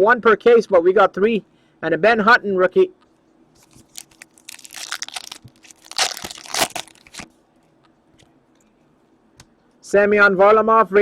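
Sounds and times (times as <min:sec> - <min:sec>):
foil wrapper crinkling and tearing: 0:03.6 - 0:07.3.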